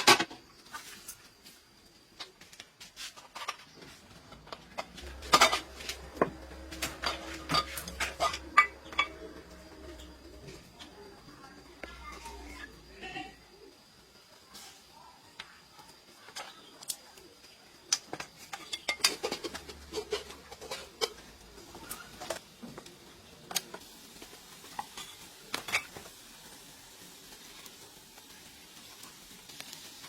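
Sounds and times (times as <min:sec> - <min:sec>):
dishes and utensils clinking: 0:03.2 - 0:10.9, 0:18.1 - 0:22.4, 0:24.7 - 0:26.1.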